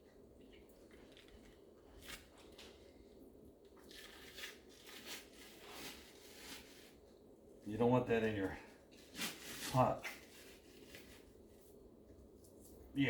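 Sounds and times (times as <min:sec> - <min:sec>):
membrane peeling off raw ribs: 0:00.6 - 0:06.6.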